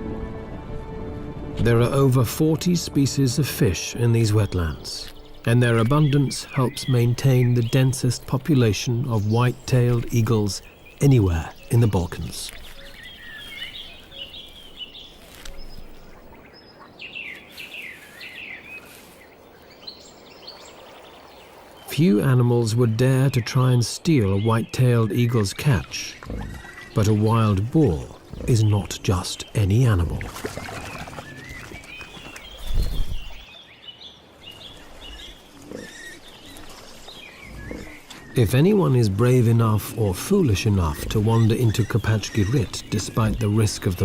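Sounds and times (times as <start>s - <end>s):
steady outdoor hiss: 0.0s - 44.0s
birds chirping: 1.4s - 44.0s
boar grunting: 25.6s - 31.7s, 35.1s - 44.0s
downward-slurring bird calls: 25.6s - 33.6s, 34.7s - 44.0s.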